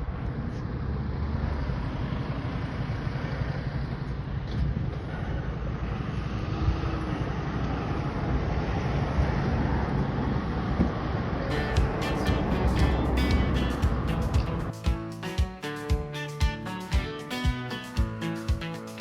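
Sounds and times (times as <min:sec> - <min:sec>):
vehicle low rumble: 0:00.0 - 0:14.8
road noise: 0:00.0 - 0:19.0.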